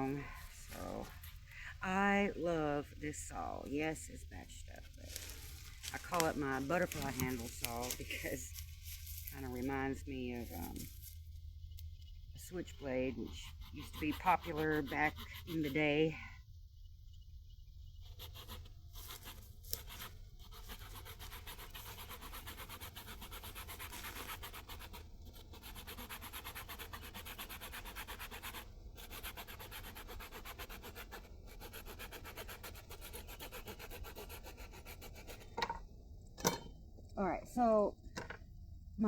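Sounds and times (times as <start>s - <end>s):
hand saw cutting wood: 19.1s - 25.0s.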